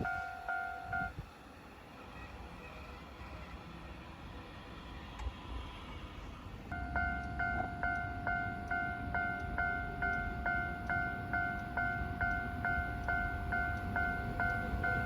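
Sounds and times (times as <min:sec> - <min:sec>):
level crossing warning bell: 0:00.0 - 0:01.2, 0:06.7 - 0:15.0.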